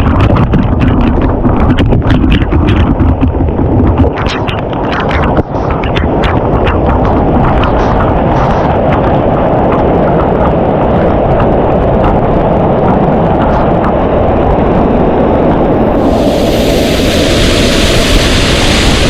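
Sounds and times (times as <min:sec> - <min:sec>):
waterfall rushing: 0:16.0 - 0:19.0.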